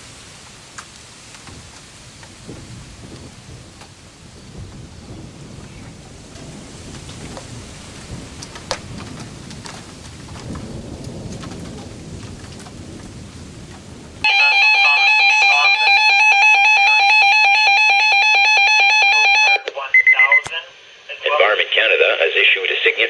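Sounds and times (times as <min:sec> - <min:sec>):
rain: 0:00.0 - 0:15.0
thunder rumbling: 0:00.0 - 0:19.3
weather radio warning alarm: 0:14.2 - 0:23.0.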